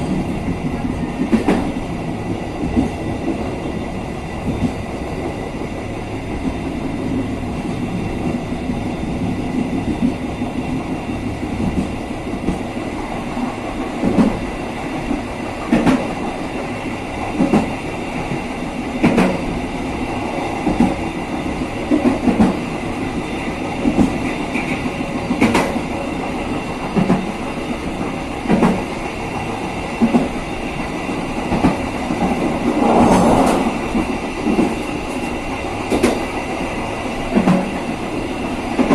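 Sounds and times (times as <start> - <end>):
train rumbling on rails: 0.0 - 38.9
rushing air: 31.8 - 37.0.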